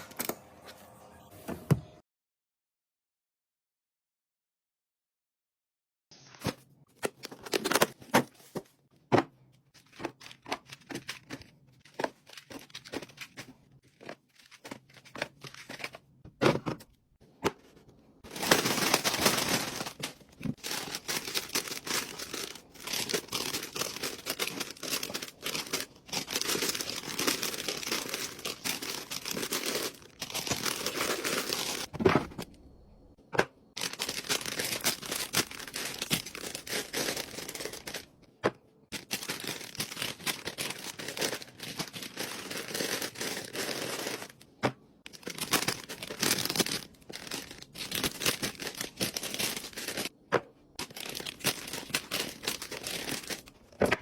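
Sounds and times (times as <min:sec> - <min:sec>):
packaging crinkling and tearing: 0:18.3 - 0:31.9, 0:33.8 - 0:38.2, 0:38.9 - 0:44.5, 0:45.1 - 0:50.1, 0:50.8 - 0:53.8.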